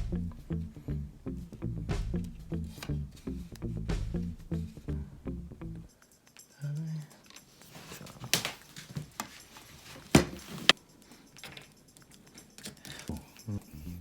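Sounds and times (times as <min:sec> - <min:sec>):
faint rustling: 0:07.3 - 0:11.4
small hard parts clicking: 0:10.6 - 0:13.4.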